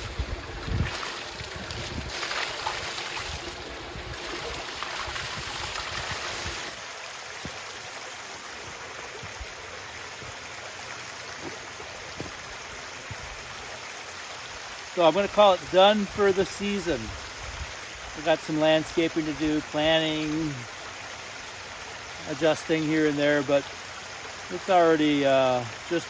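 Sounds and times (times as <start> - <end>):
wind rumble on microphone: 0.0 - 6.7
water cascading over rocks: 0.0 - 26.0.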